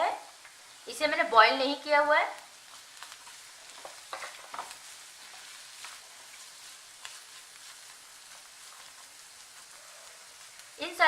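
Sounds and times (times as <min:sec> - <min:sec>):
vegetables sizzling in hot oil: 0:00.0 - 0:11.0.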